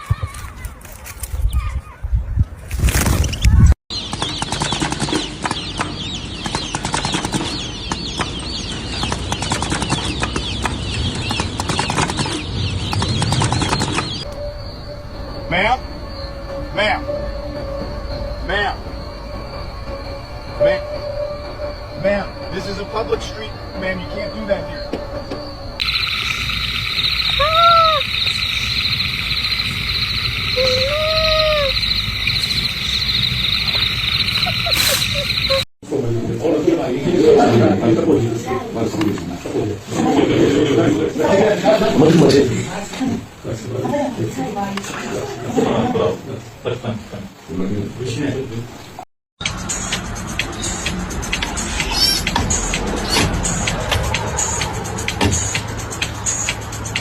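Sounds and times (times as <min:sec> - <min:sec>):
flock of birds chirping: 0:03.3 - 0:17.6, 0:21.9 - 0:35.6
insects trilling: 0:14.2 - 0:35.7
hoot-like animal calls: 0:24.7 - 0:35.7
clicks and flutters: 0:25.8 - 0:35.6.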